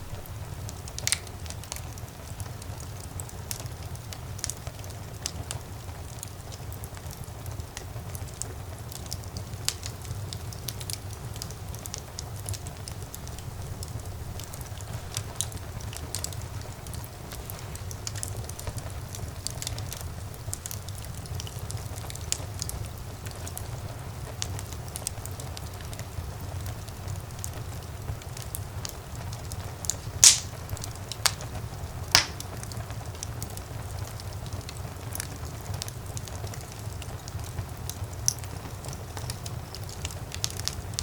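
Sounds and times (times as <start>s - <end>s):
fire crackling in fireplace: 0.0s - 41.0s
loud fire pops: 0.0s - 41.0s.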